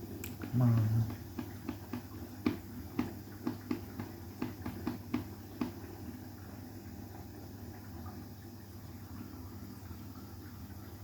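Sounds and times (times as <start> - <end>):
washing machine low hum: 0.0 - 11.0
washing machine knocks and splashes: 0.3 - 6.2.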